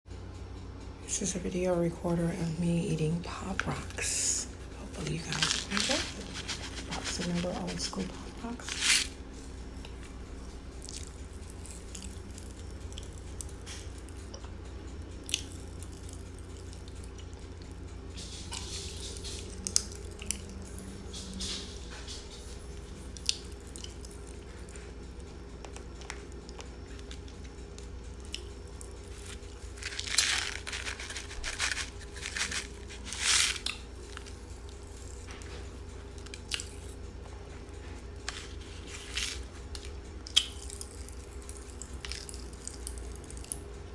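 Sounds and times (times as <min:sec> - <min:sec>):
popping candy crackling: 0:05.0 - 0:09.1, 0:28.3 - 0:34.4
crunching and chewing: 0:05.0 - 0:14.5, 0:15.2 - 0:17.4, 0:23.2 - 0:37.1, 0:37.8 - 0:43.8.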